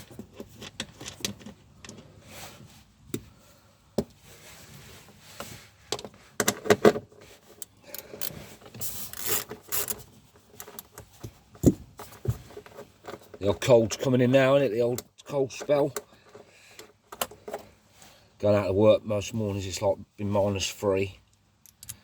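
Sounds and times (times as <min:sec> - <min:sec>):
ratchet clicking: 0:09.1 - 0:10.0.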